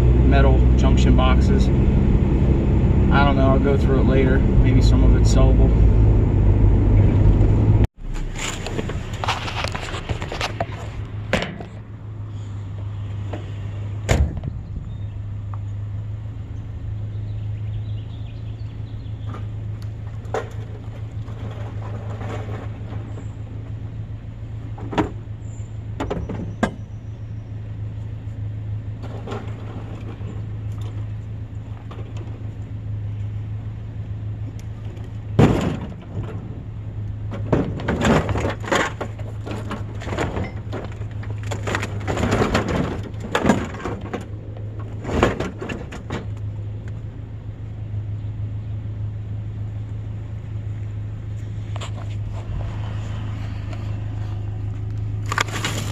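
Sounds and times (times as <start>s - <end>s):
vehicle engine humming: 0.0s - 55.9s
clattering: 20.1s - 23.3s, 37.2s - 46.5s.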